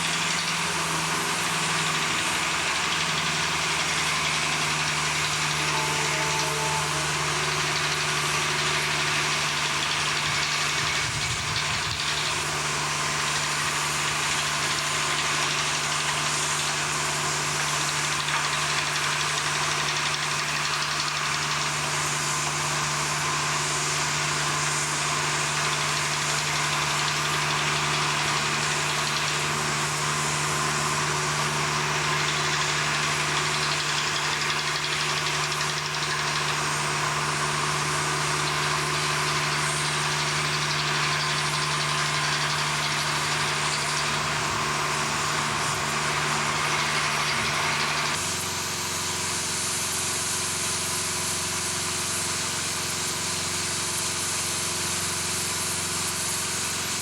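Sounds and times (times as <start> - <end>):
heavy machinery droning: 0.0 - 57.0.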